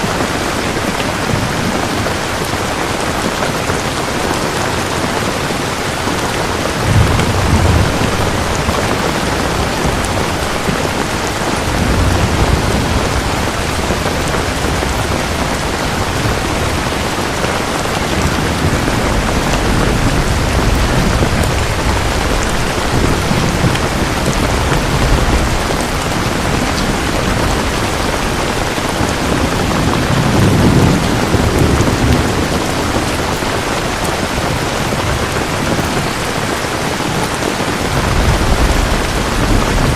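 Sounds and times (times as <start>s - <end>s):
heavy rainfall: 0.0s - 39.9s
low rumbles: 6.6s - 32.7s.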